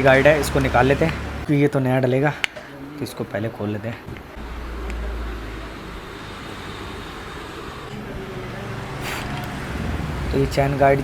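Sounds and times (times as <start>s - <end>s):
vehicle engine running: 0.0s - 1.5s, 4.4s - 11.0s.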